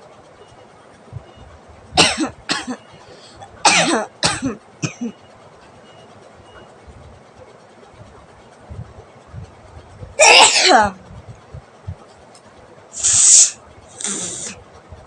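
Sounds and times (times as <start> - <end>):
woman sneezing: 10.2 - 11.0, 13.0 - 14.6.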